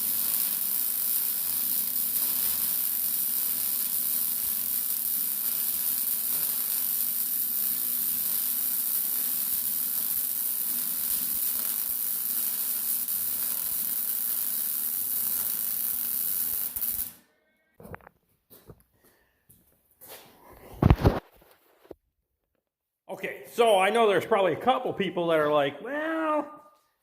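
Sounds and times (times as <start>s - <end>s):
arc welding crackling sizzle: 0.0s - 17.2s.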